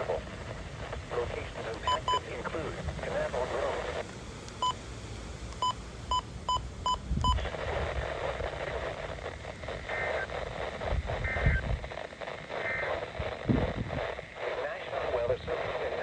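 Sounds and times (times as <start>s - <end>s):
faint electronic data bursts: 0.0s - 4.9s, 5.6s - 16.0s
radio channel hiss: 0.0s - 16.0s
short electronic beeps: 1.9s - 2.2s.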